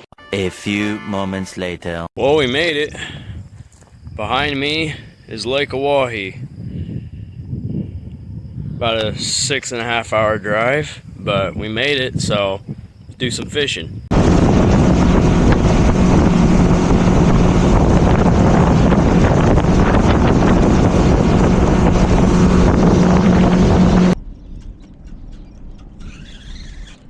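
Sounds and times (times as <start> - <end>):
wind buffeting on microphone: 2.2 - 26.9
outboard engine hum: 14.1 - 24.2.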